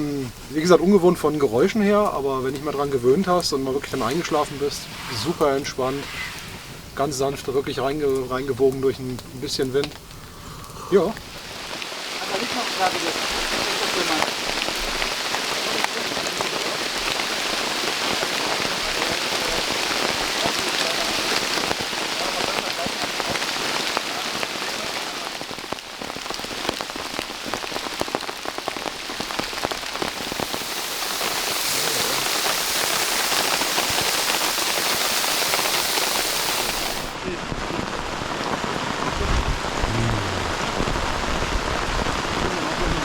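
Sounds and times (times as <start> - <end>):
steady rain patter: 0.0 - 43.0.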